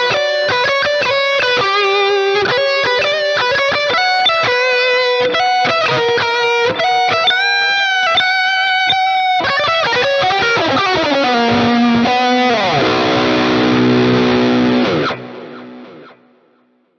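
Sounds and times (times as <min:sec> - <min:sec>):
overdriven electric guitar lead: 0:00.0 - 0:16.9.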